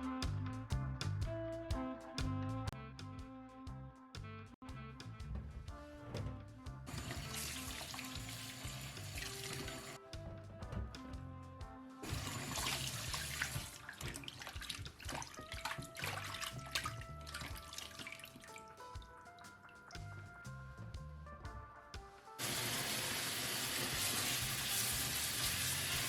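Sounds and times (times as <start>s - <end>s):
background music: 0.0s - 26.0s
tap water running into sink: 6.9s - 10.0s, 12.1s - 18.6s, 22.4s - 26.0s.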